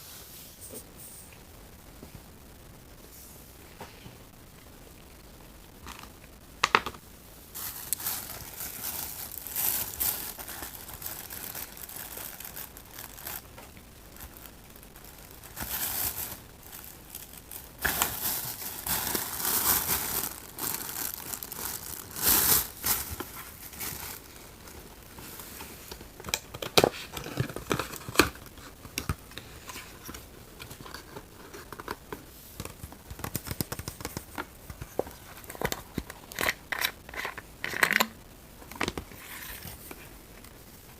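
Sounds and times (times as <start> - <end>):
wrapper crinkling and tearing: 7.5 - 32.0, 32.6 - 38.2.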